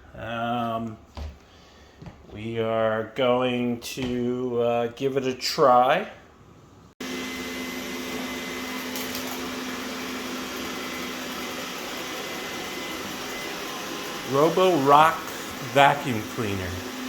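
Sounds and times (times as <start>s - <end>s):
robot vacuum whirring: 7.0s - 17.0s.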